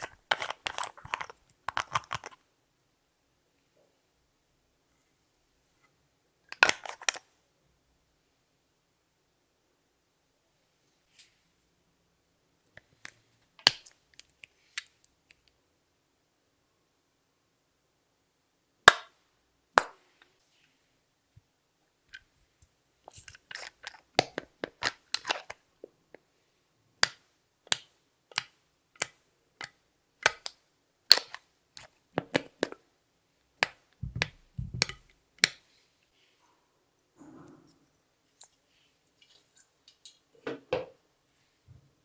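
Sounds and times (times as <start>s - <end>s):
soft low thumps: 34.0s - 34.9s.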